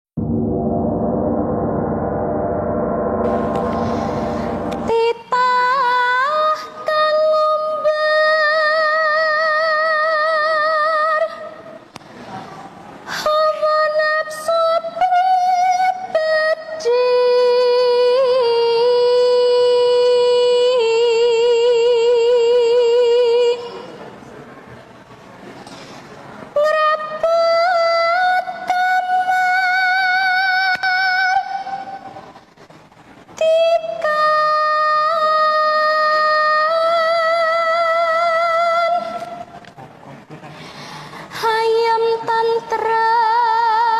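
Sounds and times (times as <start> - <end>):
long high held note: 0.2 - 6.4
woman singing with vibrato: 3.4 - 11.8, 13.1 - 24.0, 26.5 - 32.3, 33.4 - 39.6, 41.3 - 43.9.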